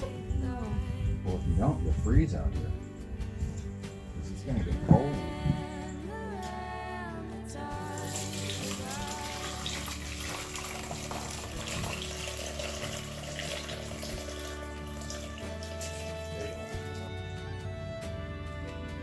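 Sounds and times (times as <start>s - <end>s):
soft background music: 0.0s - 19.0s.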